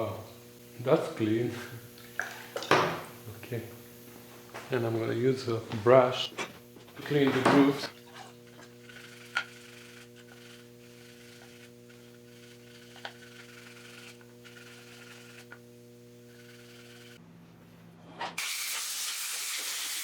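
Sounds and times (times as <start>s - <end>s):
low electrical hum: 0.0s - 18.4s
faint brushing on metal: 6.9s - 15.6s.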